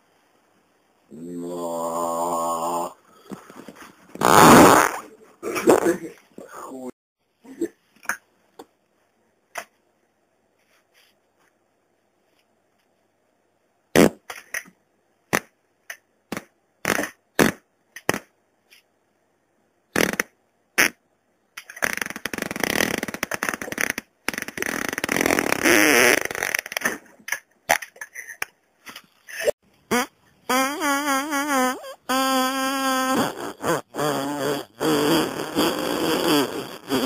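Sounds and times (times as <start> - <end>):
farts: 4.2 - 5.9, 20.0 - 21.0, 21.7 - 27.0, 29.9 - 37.0.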